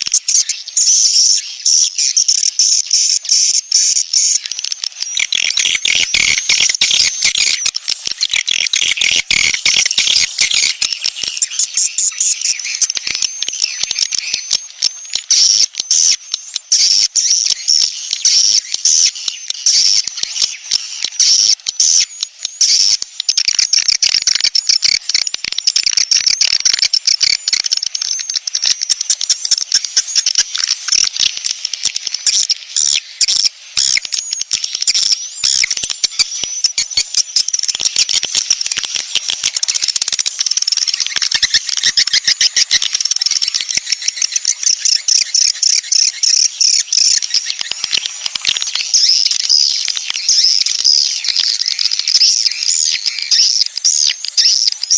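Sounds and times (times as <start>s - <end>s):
swiftlets twittering: 23.3s - 54.6s.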